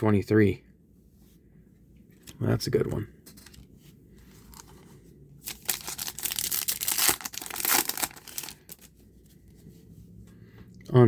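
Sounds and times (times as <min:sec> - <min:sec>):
foil wrapper tearing and crinkling: 0:05.4 - 0:08.9.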